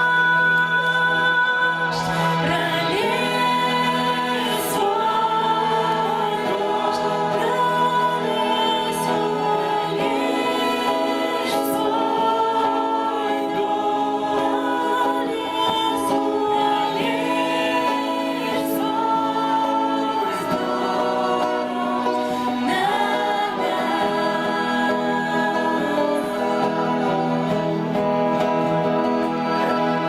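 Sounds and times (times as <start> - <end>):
group singing worship song: 0.0 - 30.0.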